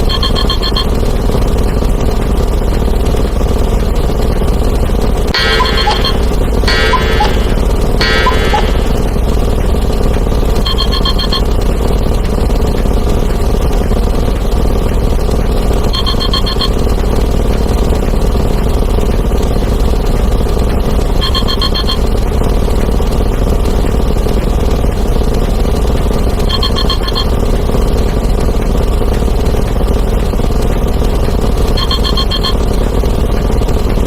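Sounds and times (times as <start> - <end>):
trilling phone ring: 5.4 - 9.3.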